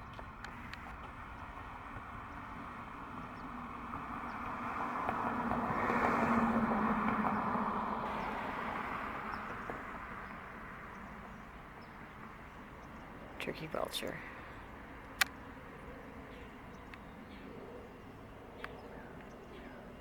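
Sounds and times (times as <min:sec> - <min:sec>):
vehicle passing by: 0:03.4 - 0:12.8.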